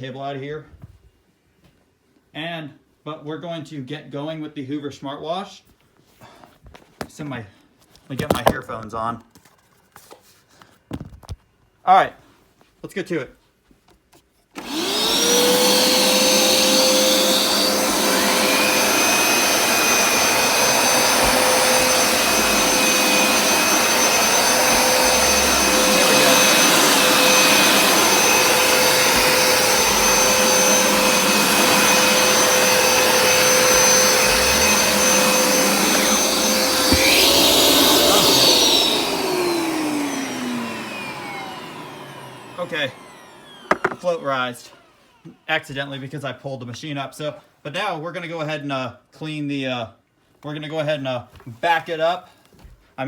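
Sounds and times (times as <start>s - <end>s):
carpet cleaner motor whine: 14.6s - 45.2s.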